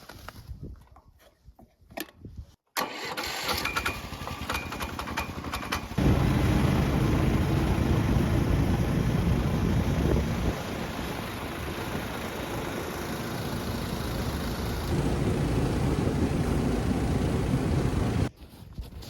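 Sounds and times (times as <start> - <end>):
small engine cranking and running: 2.8 - 8.1.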